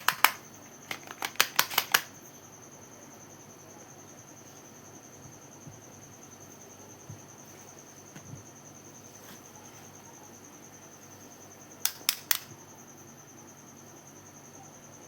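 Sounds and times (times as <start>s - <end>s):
sharp clicks: 0.0s - 2.1s, 11.8s - 12.5s.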